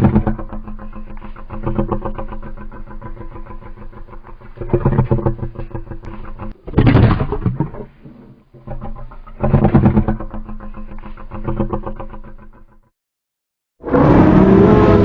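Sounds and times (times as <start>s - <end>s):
creature roar sound effect: 13.8s - 15.0s.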